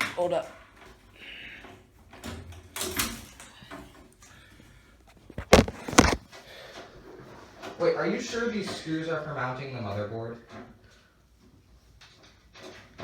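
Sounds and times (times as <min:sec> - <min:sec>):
handling rustle and clatter: 0:02.1 - 0:07.8.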